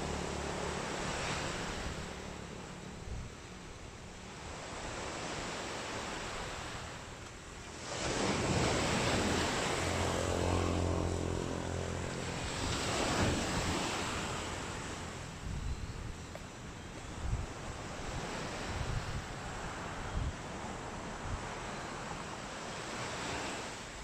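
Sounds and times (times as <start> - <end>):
sea waves washing onto beach: 0.0 - 2.9, 4.0 - 15.5, 16.4 - 24.0
engine drone: 0.0 - 4.3, 7.2 - 17.2
wind buffeting microphone: 7.8 - 21.6.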